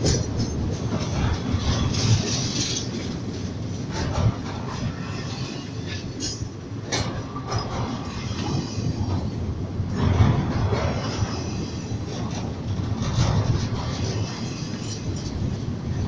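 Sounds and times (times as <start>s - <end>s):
freight train rumbling past: 0.0s - 16.0s.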